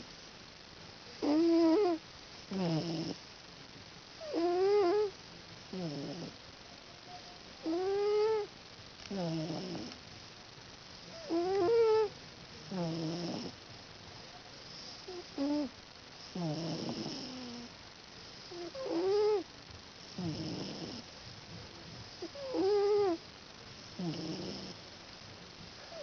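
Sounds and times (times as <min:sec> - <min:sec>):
cat snoring: 0:01.2 - 0:03.2, 0:04.2 - 0:06.4, 0:07.6 - 0:08.5, 0:09.1 - 0:10.0, 0:11.1 - 0:13.6, 0:14.8 - 0:15.7, 0:16.3 - 0:17.7, 0:18.5 - 0:19.4, 0:20.1 - 0:21.1, 0:22.2 - 0:23.2, 0:23.9 - 0:24.8.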